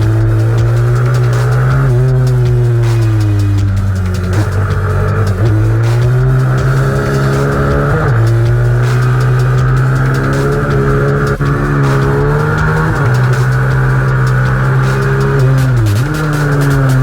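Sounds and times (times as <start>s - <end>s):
minibike engine accelerating: 0.0s - 17.0s.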